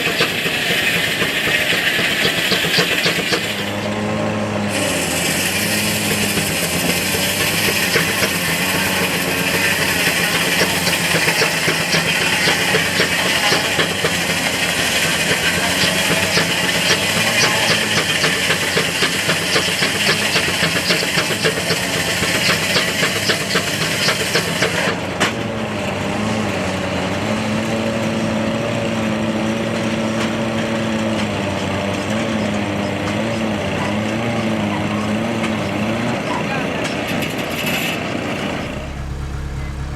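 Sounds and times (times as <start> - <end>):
mill machinery humming: 0.0 - 39.9
saw blade ripping through log: 4.6 - 21.4.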